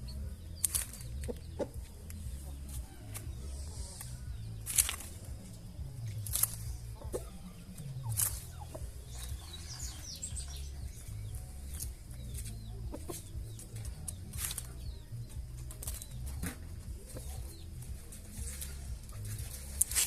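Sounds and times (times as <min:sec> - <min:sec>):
chickens clucking: 0:00.0 - 0:20.0
low rumble on microphone: 0:00.0 - 0:20.0
sharp clicks: 0:00.5 - 0:05.4, 0:06.0 - 0:07.2, 0:15.6 - 0:16.6.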